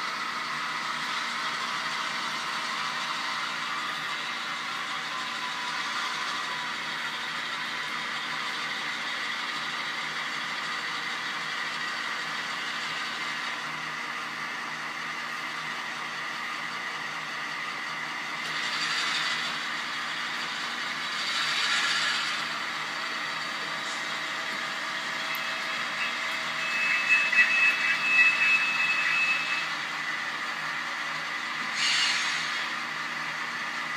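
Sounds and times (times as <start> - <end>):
model diesel locomotive sound: 0.0 - 33.9
hissing brake squeal: 21.2 - 22.5, 25.4 - 30.0, 31.7 - 32.8.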